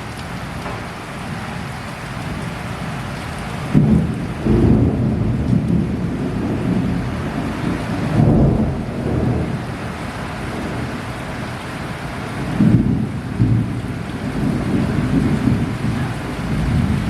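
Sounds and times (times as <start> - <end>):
heavy rain falling: 0.0 - 17.0
thunder rumbles: 3.5 - 17.0.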